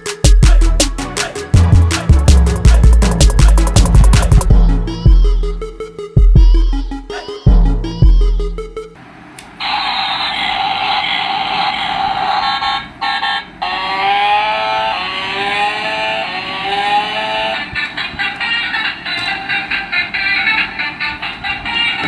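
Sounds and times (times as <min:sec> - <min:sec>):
toy motorcycle motor whirring: 0:10.0 - 0:17.6.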